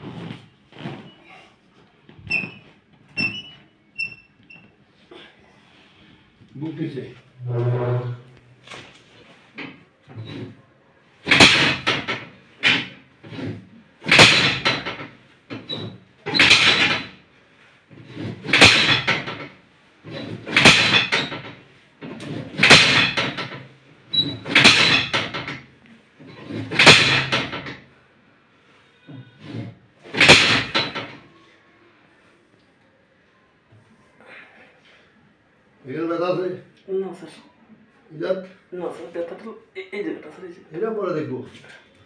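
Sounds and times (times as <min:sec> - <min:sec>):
chiropractic adjustment strokes: 0:00.0 - 0:28.0, 0:28.9 - 0:31.3.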